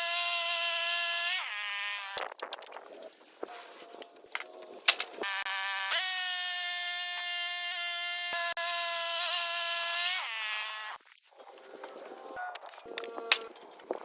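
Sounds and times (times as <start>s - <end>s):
saw motor running: 5.2s - 11.0s.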